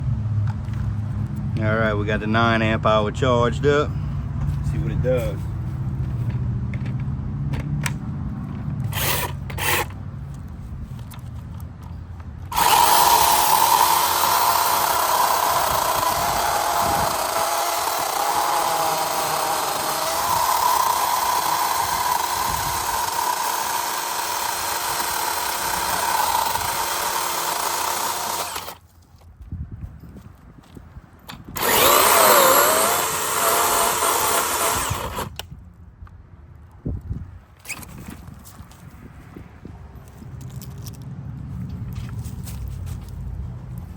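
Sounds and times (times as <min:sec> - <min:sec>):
chainsaw clicks: 0:08.9 - 0:10.0, 0:12.5 - 0:28.8, 0:31.3 - 0:35.5
electric chainsaw cutting wood: 0:08.9 - 0:10.0, 0:12.5 - 0:28.8, 0:31.6 - 0:35.4.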